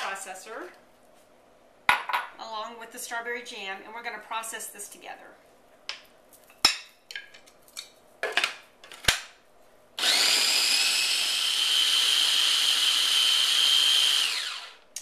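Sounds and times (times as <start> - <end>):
food processor motor whining: 10.0 - 14.8.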